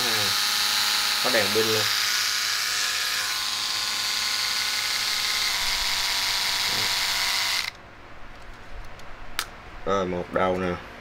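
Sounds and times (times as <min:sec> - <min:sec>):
electric shaver buzzing: 0:00.0 - 0:07.8.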